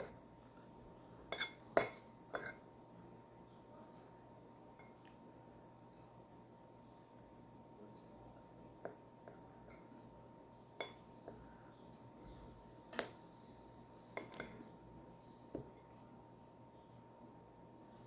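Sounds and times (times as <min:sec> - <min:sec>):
cutlery clinking against a dish: 0:01.3 - 0:02.7, 0:10.8 - 0:11.4, 0:12.9 - 0:13.3, 0:14.2 - 0:14.8.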